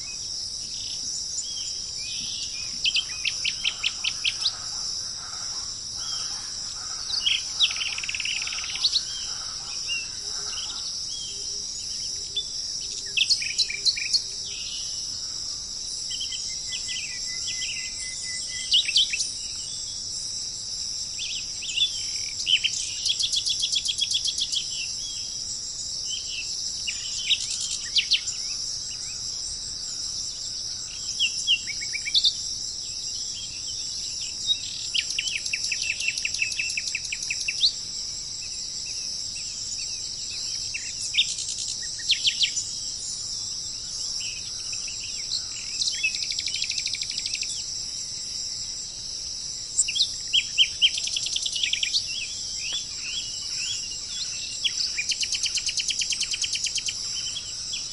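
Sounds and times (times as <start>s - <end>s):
birds chirping and trilling: 0.0s - 19.9s, 26.0s - 37.9s, 49.8s - 57.9s
high-pitched insect drone: 0.0s - 57.9s.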